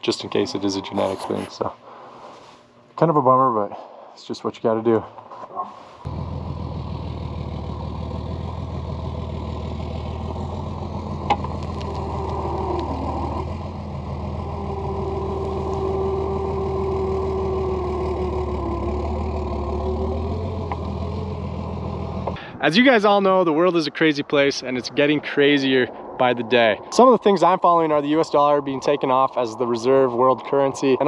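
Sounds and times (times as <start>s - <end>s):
vehicle engine idling: 6.0s - 22.5s.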